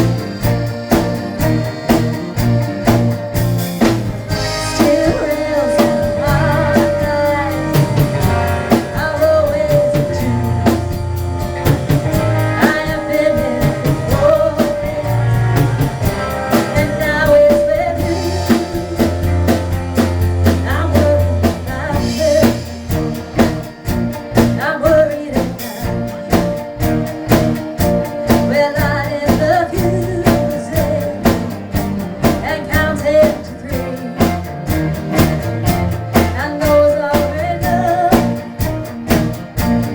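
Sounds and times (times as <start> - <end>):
live country rock band: 0.0 - 39.9.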